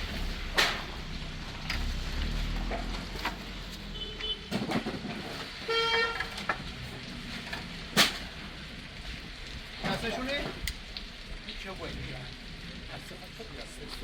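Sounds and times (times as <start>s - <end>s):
short horn toot: 5.7s - 6.2s.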